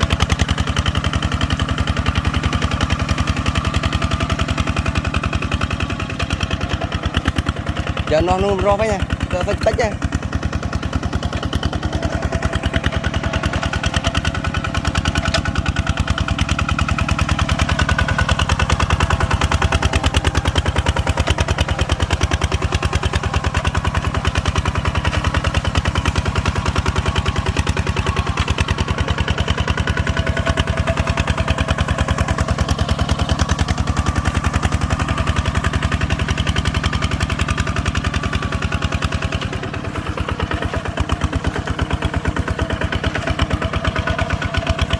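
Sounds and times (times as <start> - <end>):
farm machine engine running: 0.0 - 44.9.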